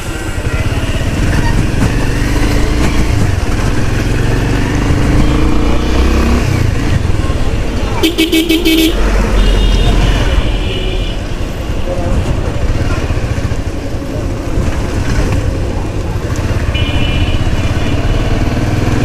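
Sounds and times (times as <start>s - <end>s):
motorcycle road and wind noise: 0.0s - 19.0s
vehicle horn: 8.0s - 11.3s, 16.6s - 18.2s.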